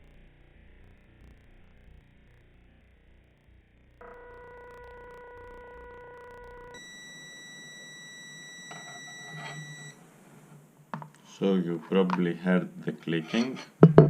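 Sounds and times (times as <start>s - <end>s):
multimeter beeping: 4.0s - 11.2s.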